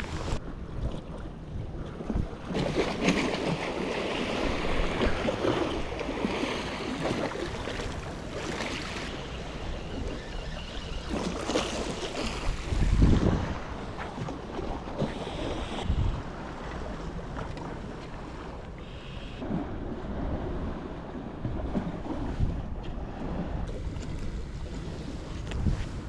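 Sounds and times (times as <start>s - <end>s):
sea washing against shore: 0.0s - 26.0s
gusty wind buffeting microphone: 4.3s - 18.5s, 19.4s - 26.0s.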